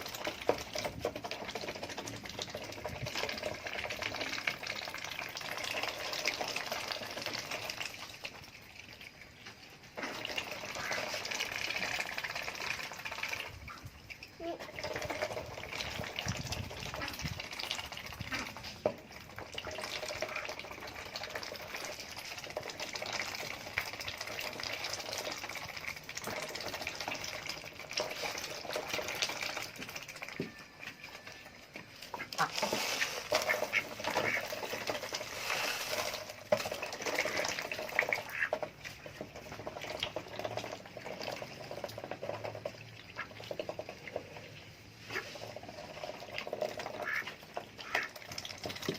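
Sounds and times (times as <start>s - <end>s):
ducks quacking: 32.1s - 34.8s, 38.2s - 38.6s, 46.9s - 48.2s.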